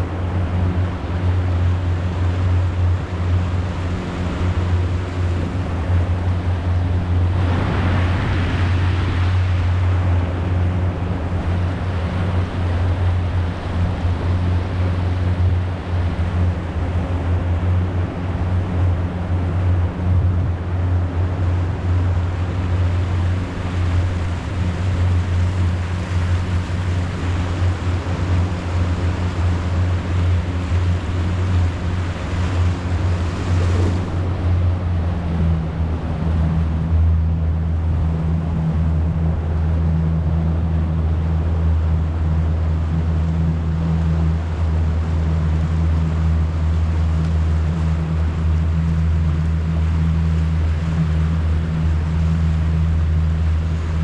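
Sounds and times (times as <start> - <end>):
boat motor droning: 0.0 - 54.0
water rushing: 0.0 - 54.0
wind noise: 0.0 - 54.0
water splashing: 4.1 - 14.8.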